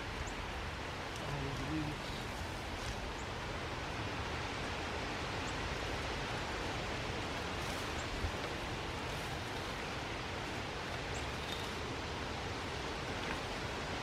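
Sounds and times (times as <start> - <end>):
outdoor background hiss: 0.0 - 14.0.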